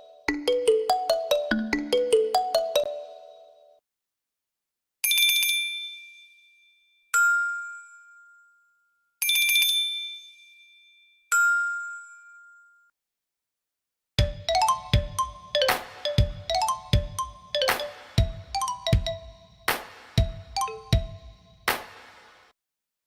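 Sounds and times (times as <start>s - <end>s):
busier ringtone melody: 0.0s - 3.7s, 14.2s - 21.6s
piano ringtone chime: 14.3s - 19.6s, 20.3s - 21.4s.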